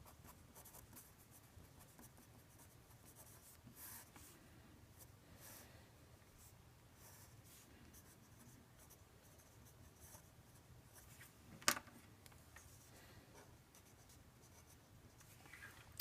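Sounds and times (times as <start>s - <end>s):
pen scratching on paper: 0.0s - 4.3s, 7.0s - 11.1s.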